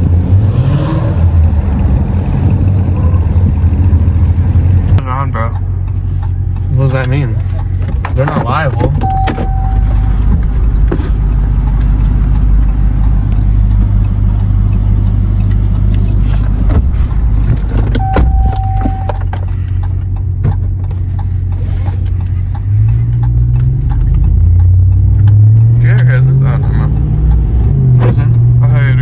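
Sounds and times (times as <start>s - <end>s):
vehicle engine running: 1.3s - 29.0s
short steady beep: 8.8s - 10.3s, 18.0s - 19.3s.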